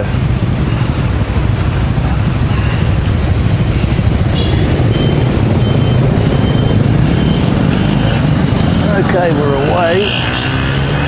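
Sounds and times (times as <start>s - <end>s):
wind on microphone: 0.0s - 10.8s
street traffic: 0.0s - 11.0s
short high beeps: 4.3s - 9.0s.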